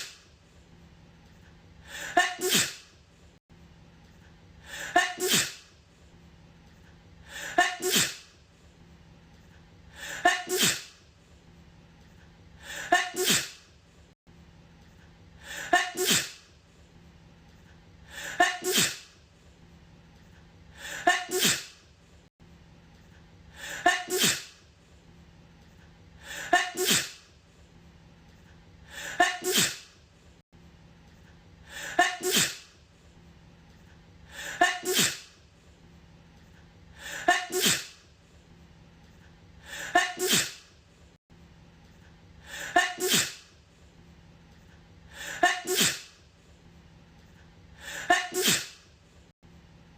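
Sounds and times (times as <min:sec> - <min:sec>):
woman sneezing: 0:01.9 - 0:02.9, 0:04.7 - 0:05.7, 0:07.3 - 0:08.3, 0:10.0 - 0:11.0, 0:12.7 - 0:13.7, 0:15.5 - 0:16.5, 0:18.2 - 0:19.2, 0:20.8 - 0:21.8, 0:23.6 - 0:24.6, 0:26.3 - 0:27.3, 0:29.0 - 0:30.0, 0:31.7 - 0:32.7, 0:34.4 - 0:35.4, 0:37.0 - 0:38.0, 0:39.7 - 0:40.7, 0:42.5 - 0:43.5, 0:45.2 - 0:46.2, 0:47.8 - 0:48.8.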